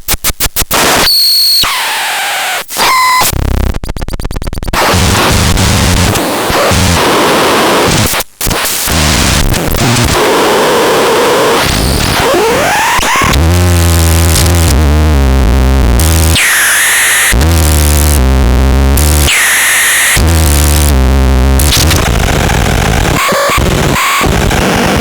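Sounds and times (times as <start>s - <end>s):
distorted low electronic drone: 4.8s - 7.1s, 11.7s - 25.0s.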